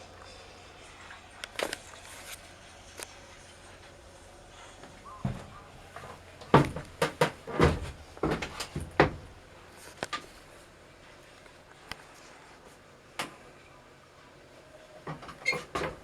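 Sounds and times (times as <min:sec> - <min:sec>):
sharp knocks and clunks: 0:06.5 - 0:09.4.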